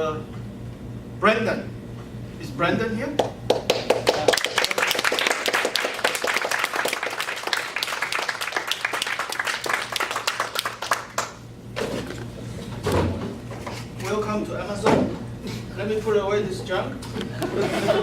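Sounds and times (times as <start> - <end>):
audience applauding: 3.5 - 11.4.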